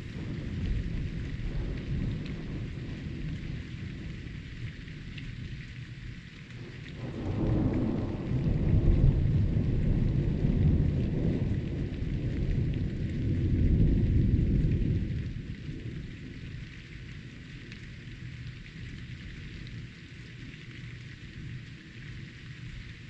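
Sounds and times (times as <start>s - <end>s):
rolling thunder: 0.0s - 5.0s, 7.0s - 16.0s
steady rain hiss: 0.0s - 23.0s.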